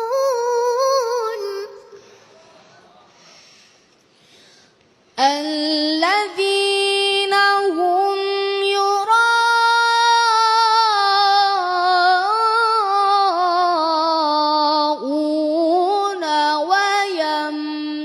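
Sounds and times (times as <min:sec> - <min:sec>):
melodic recitation by high voice: 0:00.0 - 0:02.4, 0:05.2 - 0:18.0.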